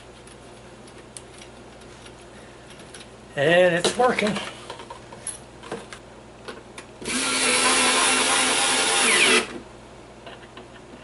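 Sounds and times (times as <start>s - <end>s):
power drill running: 7.0s - 9.6s.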